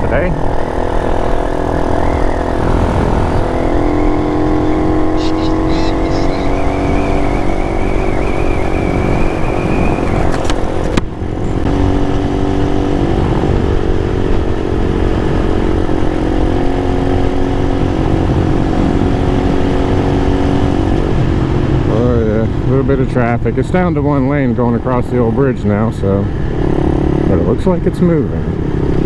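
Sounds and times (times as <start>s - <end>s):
mini motorcycle engine running: 0.0s - 3.8s, 5.0s - 7.0s
wind rumble on microphone: 0.0s - 24.9s.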